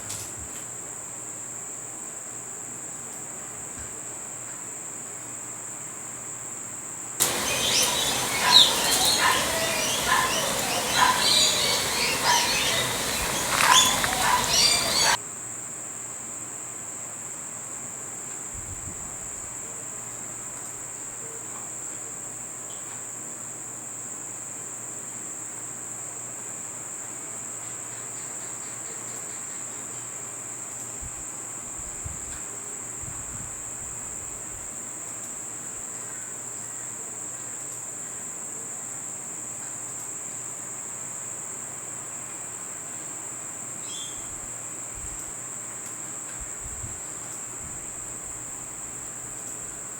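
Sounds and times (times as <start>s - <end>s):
insects trilling: 7.2s - 15.2s.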